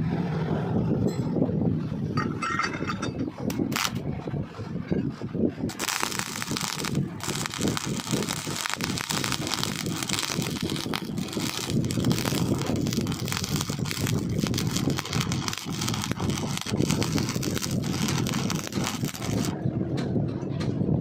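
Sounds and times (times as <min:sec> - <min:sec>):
welding arc crackling: 0:03.5 - 0:04.0, 0:05.7 - 0:19.6.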